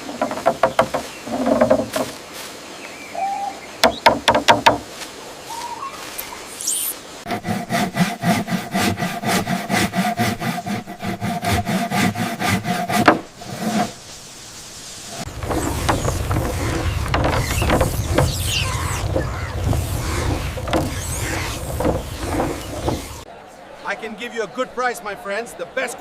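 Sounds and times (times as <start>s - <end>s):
sharp clicks and knocks: 0.0s - 2.2s, 3.8s - 4.8s, 15.2s - 23.3s
hand saw strokes: 7.3s - 14.2s, 14.8s - 23.3s.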